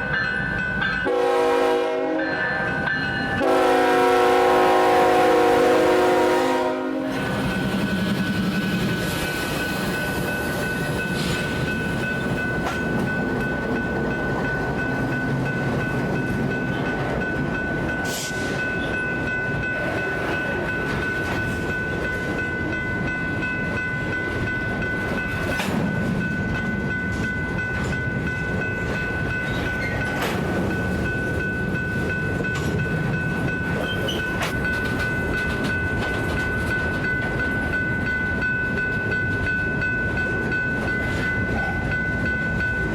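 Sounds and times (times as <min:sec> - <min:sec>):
train wheels rumbling on rails: 0:00.0 - 0:42.9
sharp rail clacks: 0:29.5 - 0:30.7.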